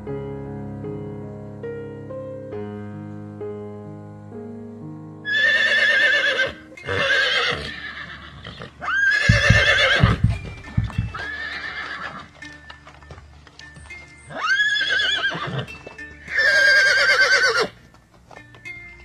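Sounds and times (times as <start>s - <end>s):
piano music: 0.0s - 7.9s, 8.7s - 19.0s
horse whinnying: 5.3s - 10.3s, 11.0s - 12.3s, 14.3s - 15.7s, 16.3s - 17.8s
low thuds: 9.3s - 11.2s.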